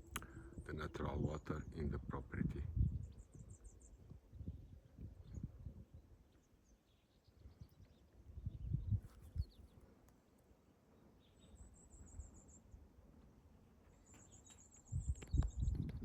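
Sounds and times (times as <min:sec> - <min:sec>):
wind on microphone: 0:00.0 - 0:06.2, 0:07.4 - 0:09.7, 0:14.9 - 0:16.0.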